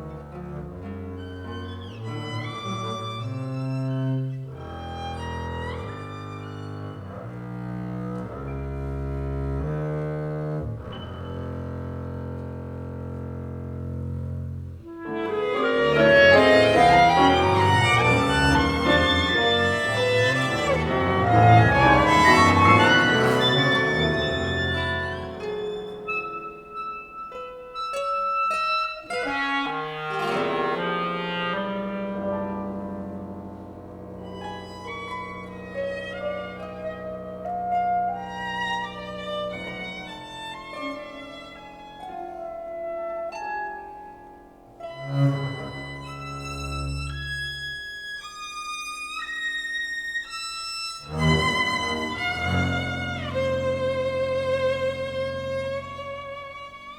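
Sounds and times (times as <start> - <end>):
chamber music ensemble: 0.0 - 56.9
violin high sustained notes: 14.8 - 44.2, 44.8 - 56.9.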